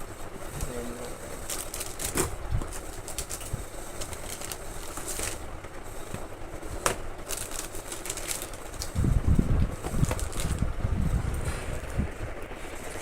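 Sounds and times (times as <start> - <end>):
packaging crinkling: 0.6 - 10.7.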